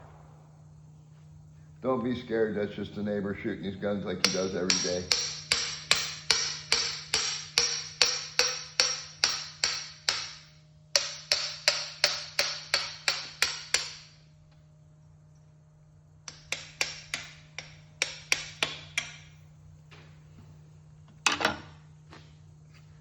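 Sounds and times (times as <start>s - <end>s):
hammer striking metal: 4.2s - 14.1s.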